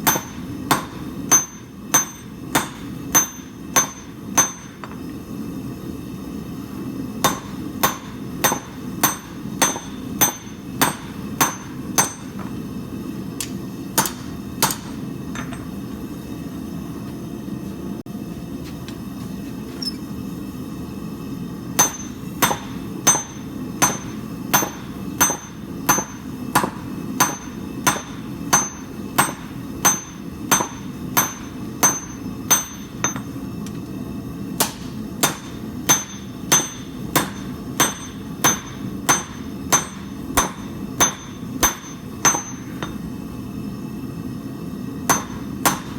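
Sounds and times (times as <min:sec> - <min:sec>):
hammer striking steel on anvil: 0:00.0 - 0:05.1, 0:07.2 - 0:12.6, 0:13.4 - 0:15.8, 0:21.8 - 0:33.4, 0:34.6 - 0:43.1, 0:45.1 - 0:45.9.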